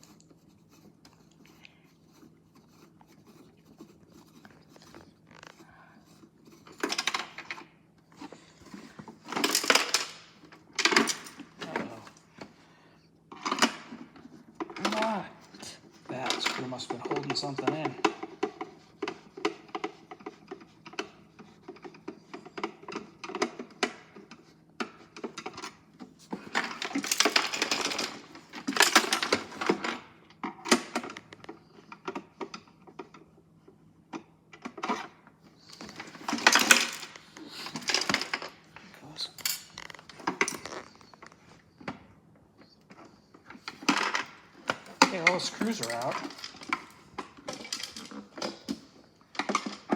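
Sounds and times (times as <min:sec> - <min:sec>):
plastic rattling and scraping: 0:02.2 - 0:12.6, 0:13.3 - 0:33.3, 0:34.1 - 0:49.9.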